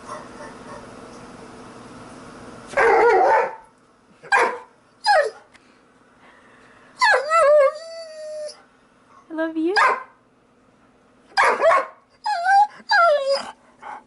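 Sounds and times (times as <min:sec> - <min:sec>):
dog barking: 0:02.7 - 0:03.7, 0:04.3 - 0:04.7, 0:09.8 - 0:10.2, 0:11.3 - 0:12.0
dog yelping: 0:02.8 - 0:03.6, 0:04.3 - 0:05.5, 0:07.0 - 0:08.6, 0:11.3 - 0:13.6.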